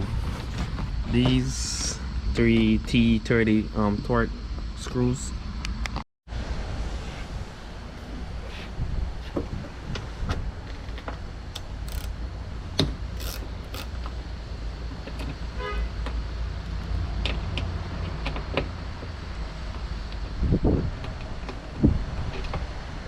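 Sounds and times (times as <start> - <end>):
hand tool clicking on metal: 11.6 - 12.2.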